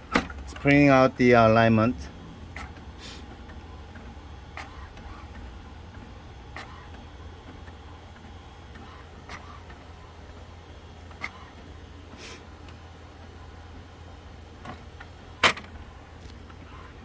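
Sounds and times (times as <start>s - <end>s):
printer clicks: 0.0s - 1.1s, 2.5s - 9.8s, 14.6s - 15.9s
printer humming: 0.0s - 17.0s.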